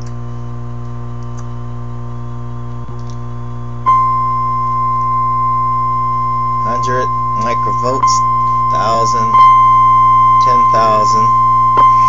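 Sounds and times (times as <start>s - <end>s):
low hum: 0.0s - 12.0s
radio test tone: 3.9s - 12.0s.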